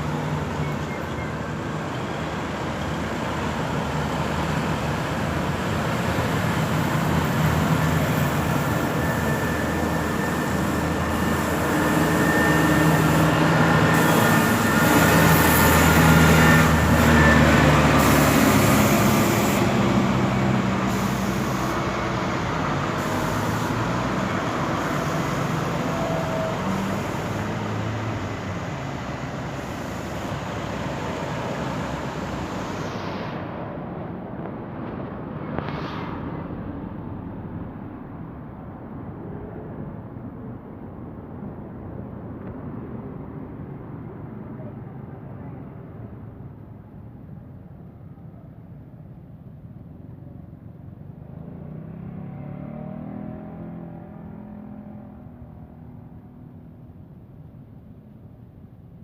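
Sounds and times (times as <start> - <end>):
street traffic: 0.0 - 59.0
vehicle engine passing: 1.5 - 33.3, 51.1 - 56.8.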